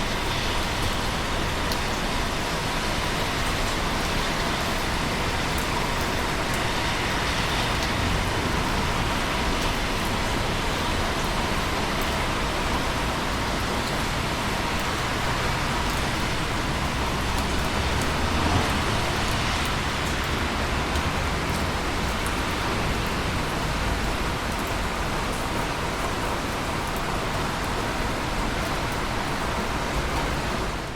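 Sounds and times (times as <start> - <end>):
low rumble of engines: 0.0 - 30.9
rain falling: 0.0 - 30.9
tyres hissing on wet road: 0.0 - 30.9.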